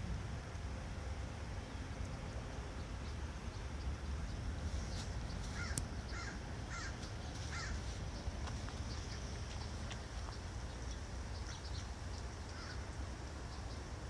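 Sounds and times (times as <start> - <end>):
low background rumble: 0.0 - 14.0
bird calls: 4.3 - 13.8.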